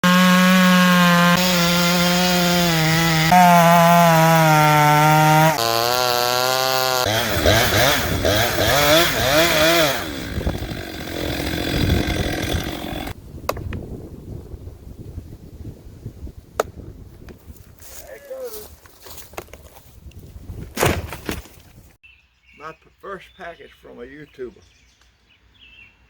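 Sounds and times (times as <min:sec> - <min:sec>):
chainsaw engine running: 0:00.0 - 0:13.2.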